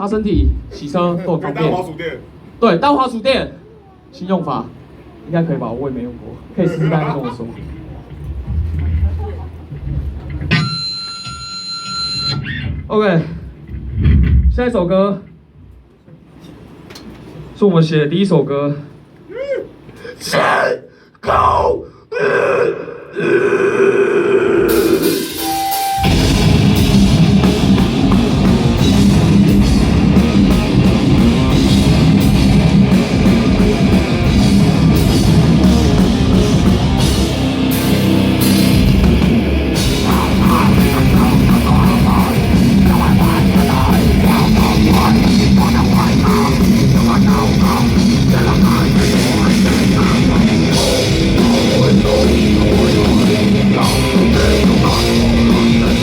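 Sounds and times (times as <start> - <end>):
drum kit: 7.6 - 11.3, 24.7 - 56.0
distorted electric guitar: 8.2 - 12.8, 24.6 - 56.0.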